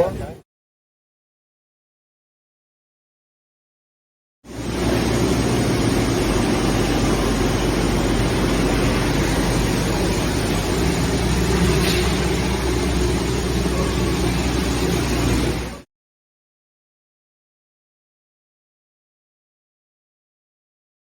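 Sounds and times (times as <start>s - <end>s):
constant low hum: 4.5s - 15.8s
industrial machinery running: 4.5s - 15.9s.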